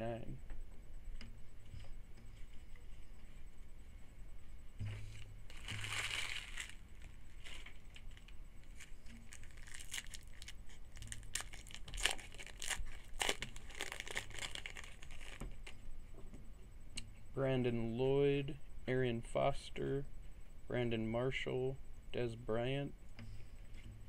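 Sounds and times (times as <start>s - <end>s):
wrapper tearing and crinkling: 5.5s - 15.6s.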